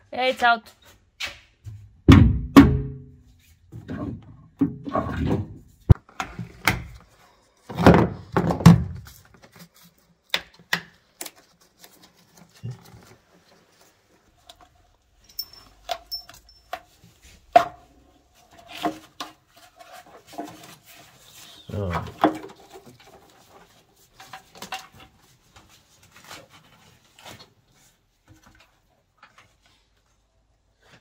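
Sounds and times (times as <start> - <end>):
knocks and clatter of car parts: 1.8 - 7.0, 7.7 - 9.1.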